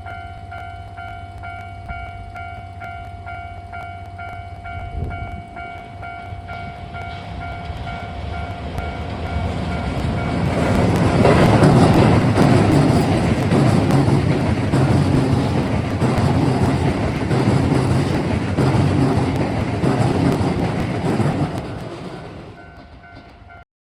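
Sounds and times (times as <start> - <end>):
electric train rumbling past: 0.0 - 23.6
wheels clattering over rail joints: 5.8 - 23.5.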